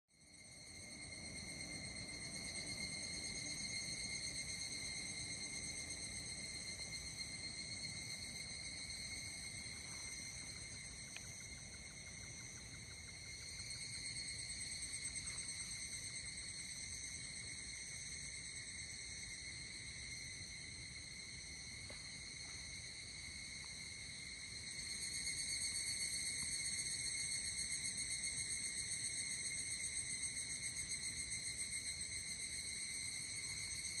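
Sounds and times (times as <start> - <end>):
insects trilling: 0.2 - 34.0.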